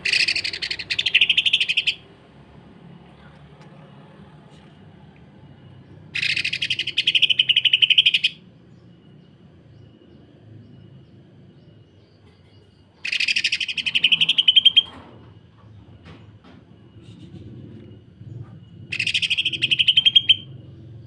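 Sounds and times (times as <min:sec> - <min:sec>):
bird rattling song: 0:00.0 - 0:02.1, 0:06.1 - 0:08.4, 0:12.3 - 0:16.3, 0:18.6 - 0:20.6.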